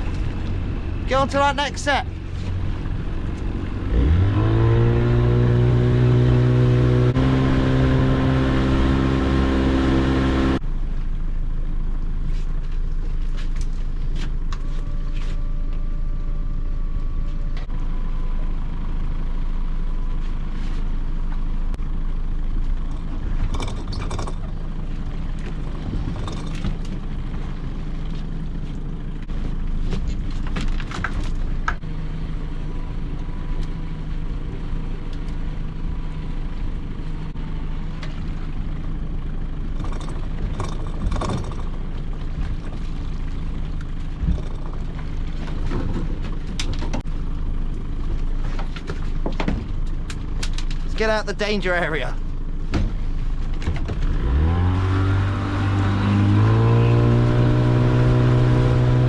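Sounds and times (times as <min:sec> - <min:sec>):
boat engine running: 0:00.0 - 0:59.0
knocks and clatters: 0:22.8 - 0:24.7, 0:25.4 - 0:27.1, 0:39.7 - 0:43.0, 0:44.1 - 0:47.1.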